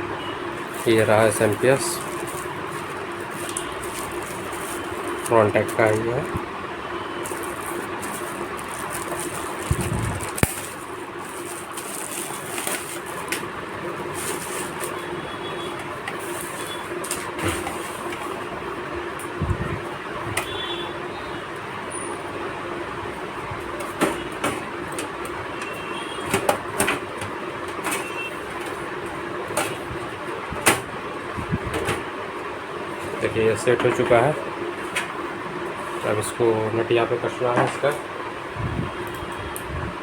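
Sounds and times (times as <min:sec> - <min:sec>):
steady background hum: 0:00.0 - 0:40.0.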